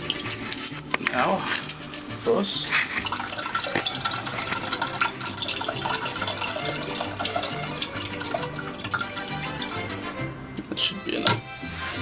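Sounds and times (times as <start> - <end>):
liquid pouring into cocktail mixer: 2.9 - 10.6
background music with bass line: 6.6 - 12.0.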